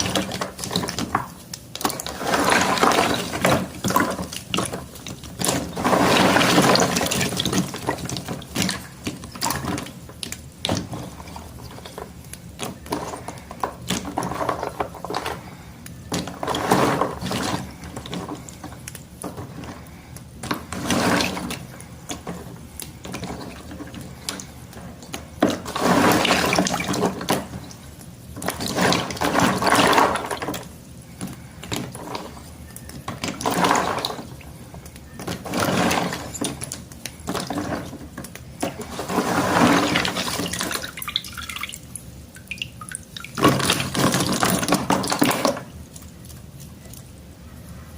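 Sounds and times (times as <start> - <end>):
chalk crackling and snapping: 0.6 - 2.1, 12.1 - 13.5
water swishing: 38.6 - 46.2.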